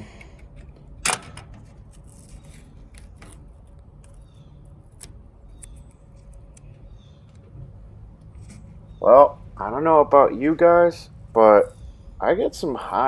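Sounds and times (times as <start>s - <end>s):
small clicks rustles and scrapes: 0.0s - 8.9s
masking tape pulled and torn: 1.7s - 6.8s.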